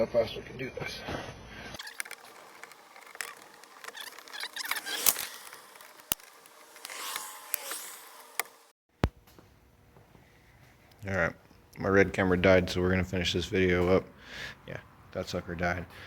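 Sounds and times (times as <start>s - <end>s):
small clicks and scrapes: 1.8s - 8.7s.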